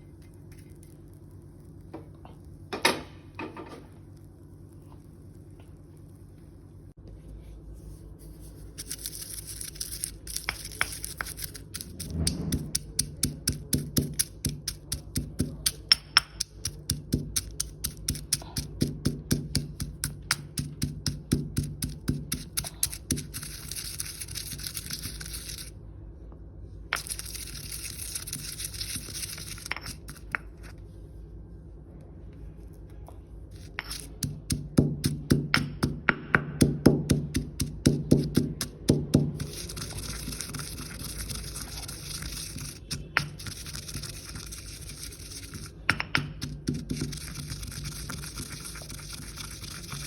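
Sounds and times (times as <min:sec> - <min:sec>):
pestle pounding in a mortar: 0:10.3 - 0:23.6, 0:33.8 - 0:50.0.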